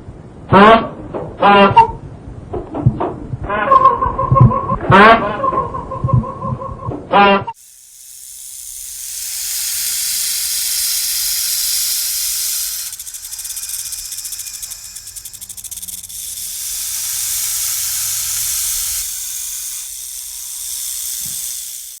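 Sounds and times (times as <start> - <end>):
fast fluttering: 7.6 - 22.0
rushing hiss: 7.6 - 22.0.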